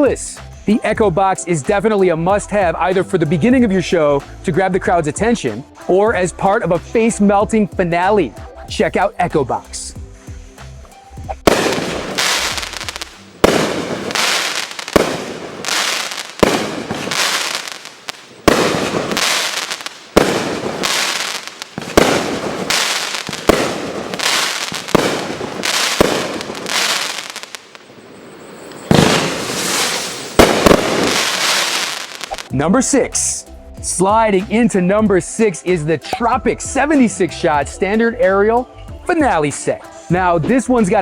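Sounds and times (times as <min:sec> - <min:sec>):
fireworks booming: 0:11.4 - 0:28.0, 0:28.6 - 0:32.5
firework crackle: 0:11.4 - 0:32.5.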